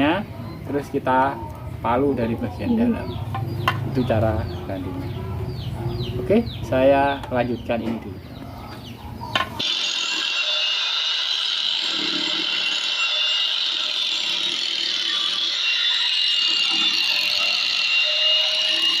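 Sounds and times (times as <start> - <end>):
angle grinder grinding metal: 9.4 - 19.0.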